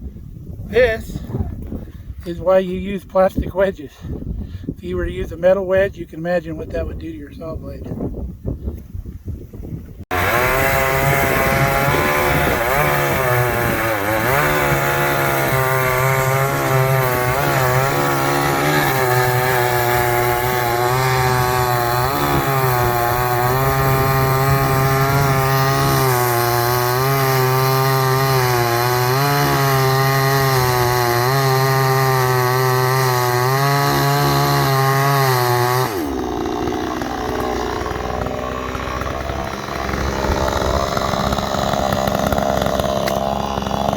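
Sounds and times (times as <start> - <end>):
chainsaw cutting wood: 10.1 - 43.9.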